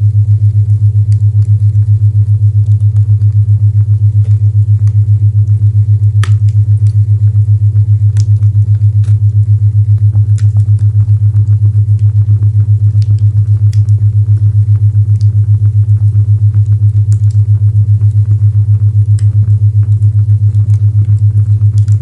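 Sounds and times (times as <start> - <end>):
pulsing low tone: 0.0 - 22.0
small fire pops: 4.2 - 5.6, 6.2 - 7.0, 8.2 - 9.3, 9.9 - 12.3, 12.9 - 14.0, 16.6 - 18.2, 19.1 - 22.0.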